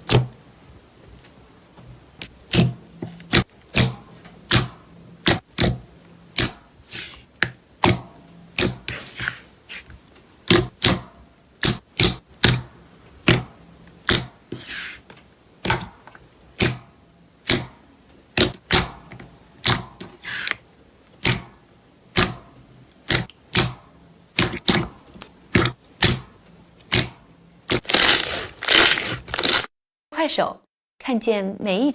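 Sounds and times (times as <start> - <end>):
slime squelching: 27.7 - 29.7.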